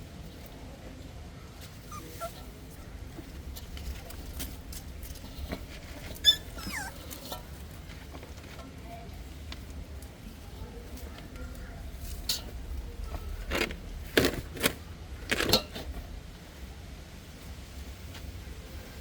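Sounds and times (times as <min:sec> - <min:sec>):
puppy whimpering: 0:01.8 - 0:02.8, 0:06.0 - 0:07.5
puppy yelp: 0:01.8 - 0:02.9, 0:06.0 - 0:07.5.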